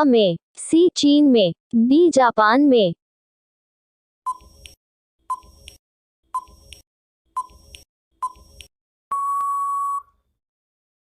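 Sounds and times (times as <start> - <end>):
short timer beeps: 7.4 - 10.1.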